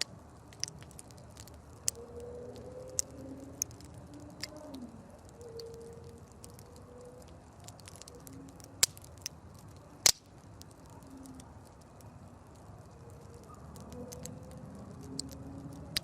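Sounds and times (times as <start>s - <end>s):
campfire crackling: 0.0s - 16.0s
loud sharp pops: 10.0s - 10.6s.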